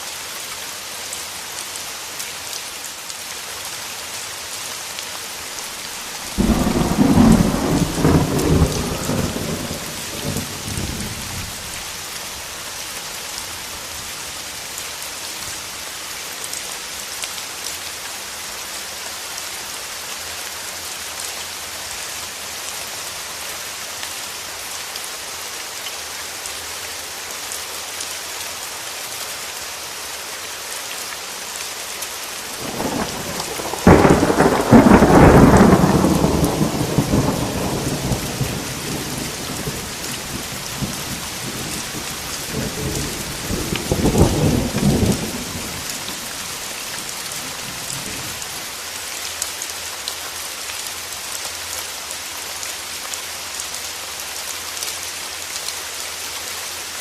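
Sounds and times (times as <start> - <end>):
steady rain: 0.0 - 57.0
thunder rumbling: 6.0 - 11.8, 32.6 - 46.7.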